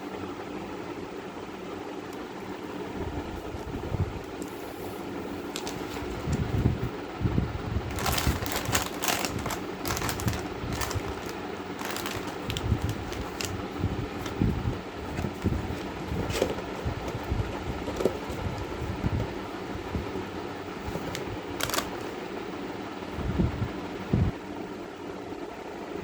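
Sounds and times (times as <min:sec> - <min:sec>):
steady fan hum: 0:00.0 - 0:26.0
irregular clicks and crackles: 0:07.9 - 0:13.6, 0:21.0 - 0:22.2.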